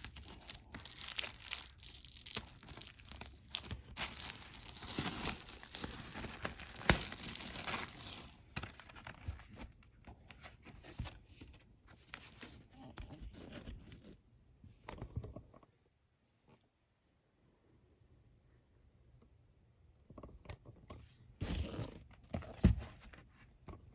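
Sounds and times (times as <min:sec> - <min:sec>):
packaging tearing and crinkling: 0:00.0 - 0:08.4.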